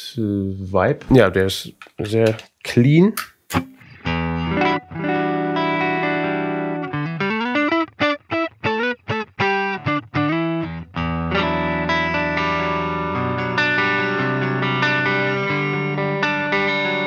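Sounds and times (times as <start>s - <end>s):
clean electric guitar: 3.5s - 17.0s.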